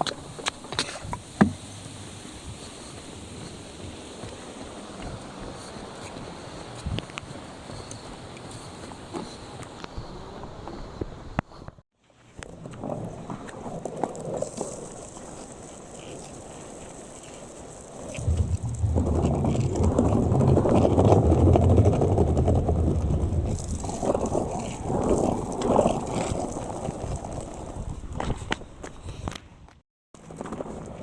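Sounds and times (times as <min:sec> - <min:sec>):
skateboard wheels rolling on pavement: 0:00.0 - 0:31.0.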